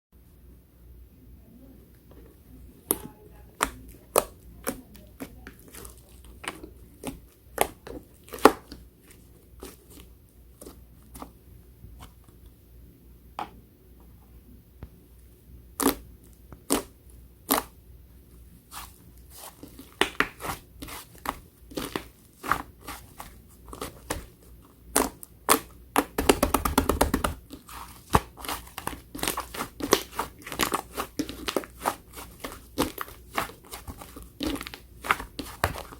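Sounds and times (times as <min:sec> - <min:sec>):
slime clicking and popping: 0:24.9 - 0:35.9.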